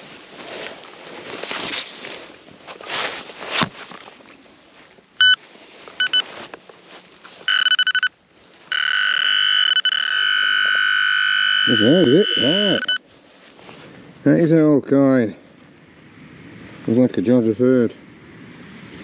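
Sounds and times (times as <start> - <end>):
rustling and scraping in soil: 0.0 - 10.8, 12.0 - 14.5
metal detector pinpointer beeping: 6.0 - 6.2, 7.5 - 8.1, 8.7 - 13.0.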